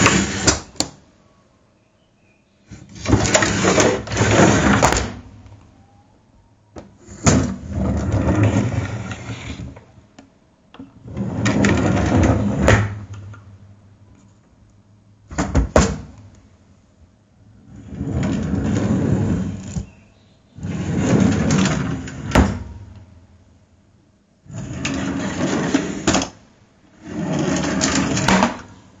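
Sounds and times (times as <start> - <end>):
drawer sliding: 0.0 - 0.8, 2.7 - 5.3, 7.0 - 9.9, 10.9 - 13.3, 17.6 - 19.9, 20.6 - 23.0, 24.5 - 26.4, 27.0 - 28.8.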